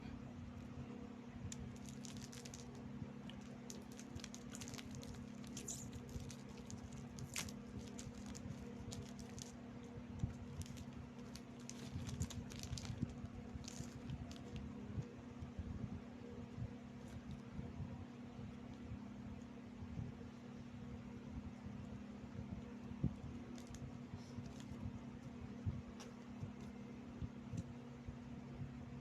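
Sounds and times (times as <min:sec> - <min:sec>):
steady low hum: 0:00.0 - 0:29.0
biscuit crunching: 0:01.5 - 0:09.6, 0:10.2 - 0:14.6.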